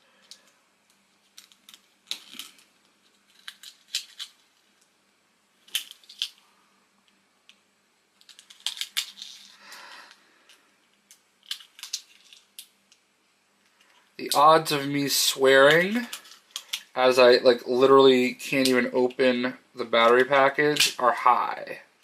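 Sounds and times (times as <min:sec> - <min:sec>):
packaging crinkling: 0:01.2 - 0:04.8, 0:11.4 - 0:12.7
plastic parts clicking and tapping: 0:08.2 - 0:09.5, 0:10.5 - 0:13.0, 0:16.0 - 0:16.9.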